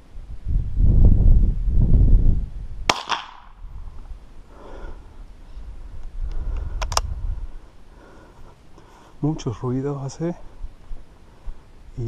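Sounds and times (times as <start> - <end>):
wind buffeting microphone: 0.0 - 7.7
rifle shot: 2.9 - 3.6.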